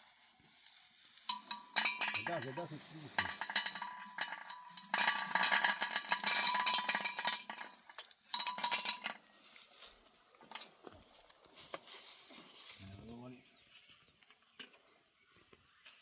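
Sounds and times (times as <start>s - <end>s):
metal pots clinking and scraping: 1.2s - 9.5s, 10.4s - 10.9s.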